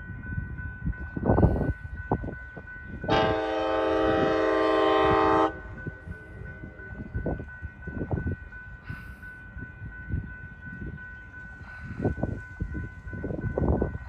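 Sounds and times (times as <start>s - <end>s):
low rumble of moving train: 0.0s - 14.0s
train horn blast: 3.1s - 5.7s.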